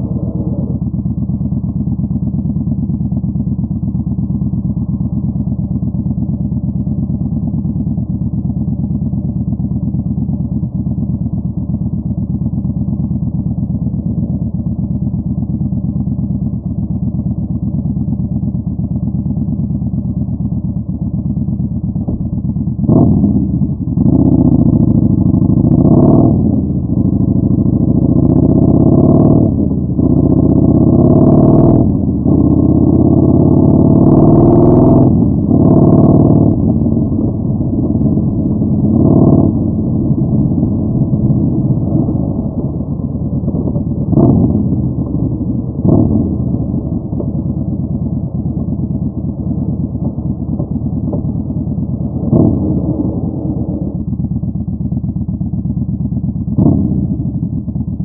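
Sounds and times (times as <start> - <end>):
motorcycle engine rumbling: 0.0 - 58.0.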